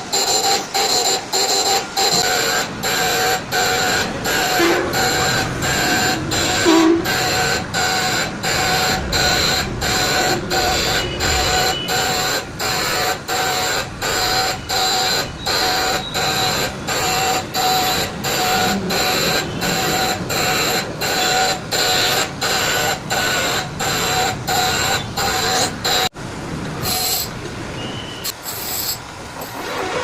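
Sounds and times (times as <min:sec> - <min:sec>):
machine tool whining strokes: 0:00.1 - 0:26.1.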